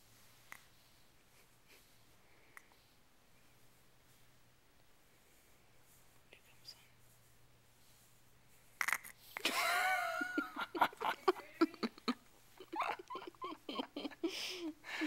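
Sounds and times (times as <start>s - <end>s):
stifled laughter: 9.4s - 15.0s.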